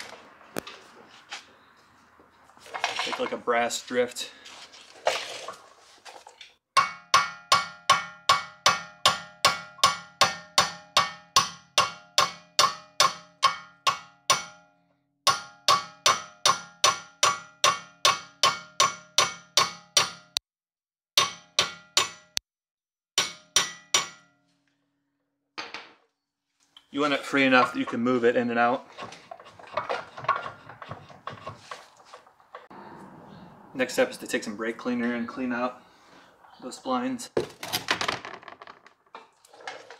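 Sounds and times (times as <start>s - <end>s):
hammer striking metal drift: 6.8s - 14.7s, 21.2s - 22.4s, 23.2s - 24.4s.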